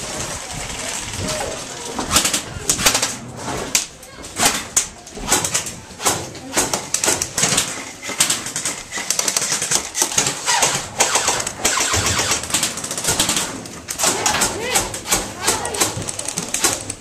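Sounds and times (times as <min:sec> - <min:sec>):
airsoft guns firing: 0:04.4 - 0:17.0.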